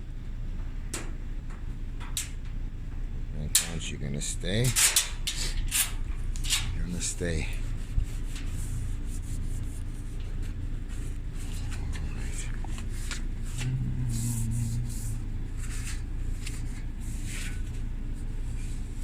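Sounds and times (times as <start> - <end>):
steady low hum: 0.0 - 19.0
rag rustling and scraping: 7.6 - 18.8.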